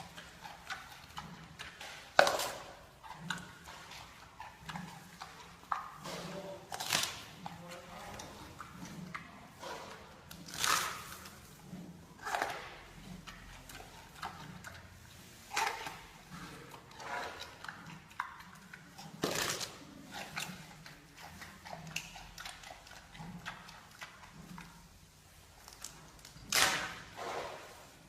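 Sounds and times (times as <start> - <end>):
panda crunching bamboo: 5.7 - 7.5, 9.6 - 11.4, 19.0 - 24.1, 25.6 - 27.6.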